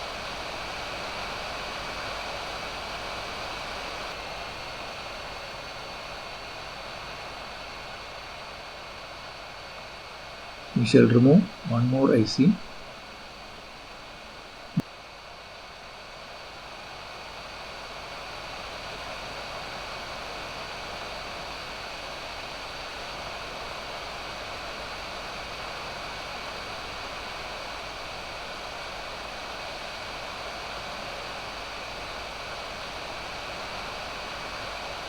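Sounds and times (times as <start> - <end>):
faint high whine: 10.8 - 12.8.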